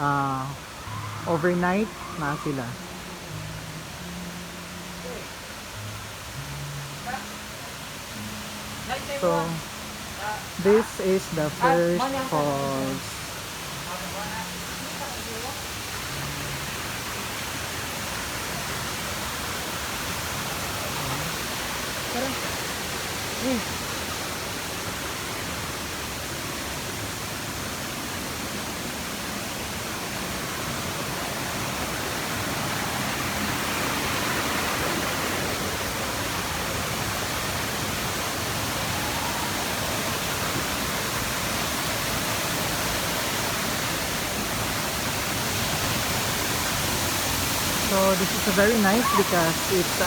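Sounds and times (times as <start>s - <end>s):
waterfall roaring: 0.0s - 50.0s.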